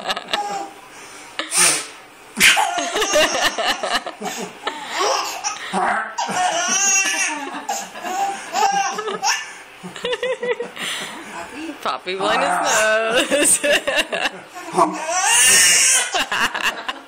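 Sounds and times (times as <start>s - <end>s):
hearty laughter: 9.8s - 11.3s, 13.2s - 14.8s, 16.1s - 17.0s.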